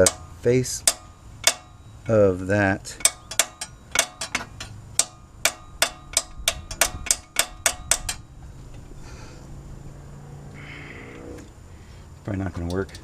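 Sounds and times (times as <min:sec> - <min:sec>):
hammer tapping metal: 0:00.0 - 0:02.2, 0:03.0 - 0:08.3.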